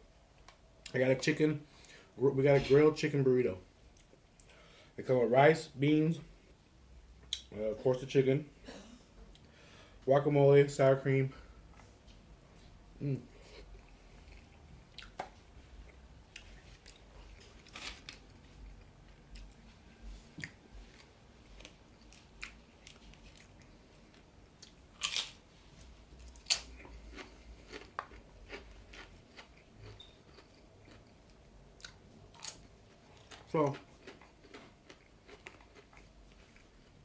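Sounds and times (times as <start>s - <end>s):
person chewing food: 13.1s - 37.0s
food crackles: 16.4s - 19.6s, 20.4s - 37.0s.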